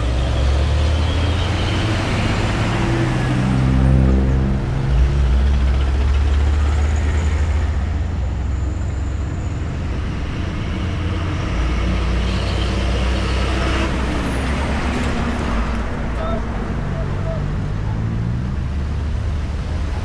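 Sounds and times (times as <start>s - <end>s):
road traffic rumble: 0.0s - 20.0s
vehicle passing by: 10.1s - 20.0s.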